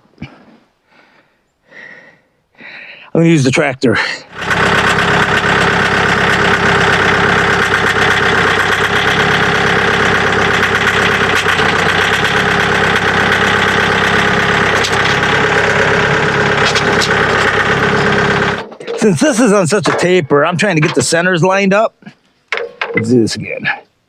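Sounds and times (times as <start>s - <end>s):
tractor diesel engine running: 3.2s - 21.6s.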